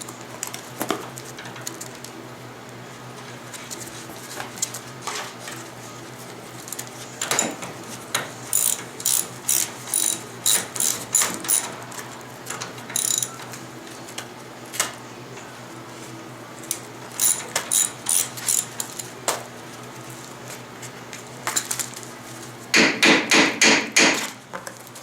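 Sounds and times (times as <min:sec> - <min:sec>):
ratchet wrench clicking: 0:08.5 - 0:11.7, 0:13.0 - 0:13.3, 0:17.2 - 0:19.0.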